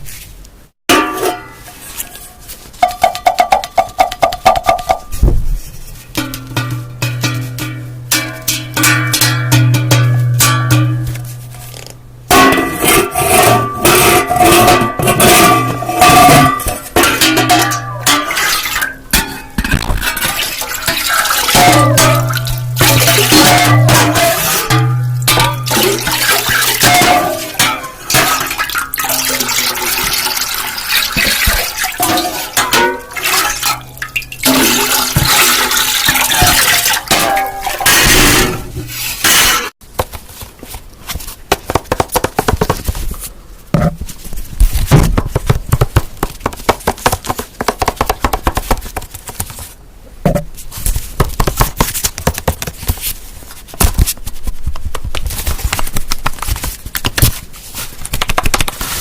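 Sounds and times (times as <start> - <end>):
tapping and clicking on objects: 2.8 - 5.3, 45.0 - 49.1.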